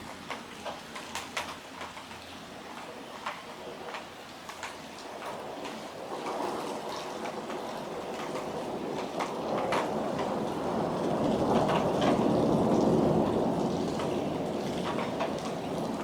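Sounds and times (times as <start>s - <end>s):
raindrops ticking: 0.0s - 16.0s
rolling thunder: 7.3s - 16.0s.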